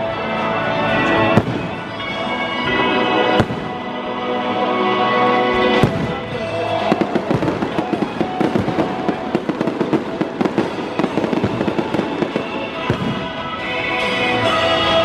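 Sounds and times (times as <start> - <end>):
firework bang: 1.4 - 1.9, 3.4 - 3.8, 5.8 - 13.4
fireworks crackling pops: 1.4 - 2.0, 3.4 - 3.8, 5.8 - 13.5.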